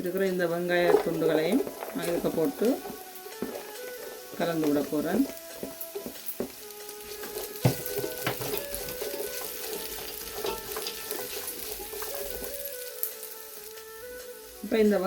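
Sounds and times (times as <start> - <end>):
onion sizzling in oil: 0.0 - 15.0
soft background music: 0.0 - 15.0
spoon knocking against pan: 0.9 - 6.6, 7.2 - 12.5.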